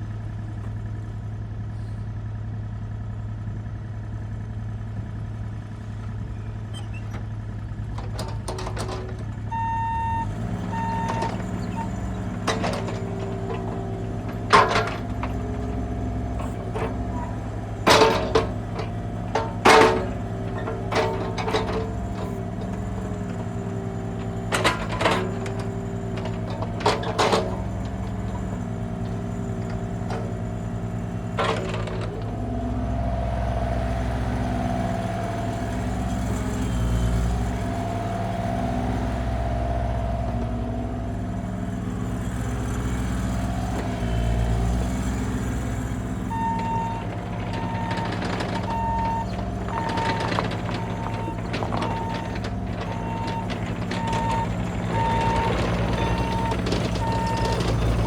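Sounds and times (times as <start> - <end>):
mini excavator diesel engine running: 0.0 - 58.0
sharp clunks: 10.7 - 32.5, 46.5 - 58.0.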